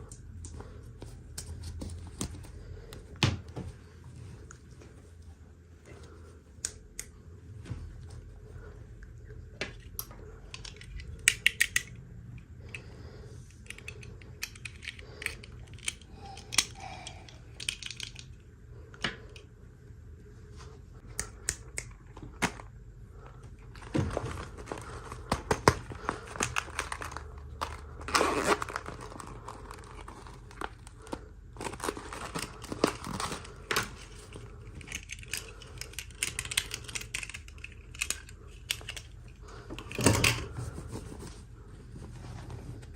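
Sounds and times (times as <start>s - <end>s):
plastic and paper crinkling: 23.7s - 38.0s.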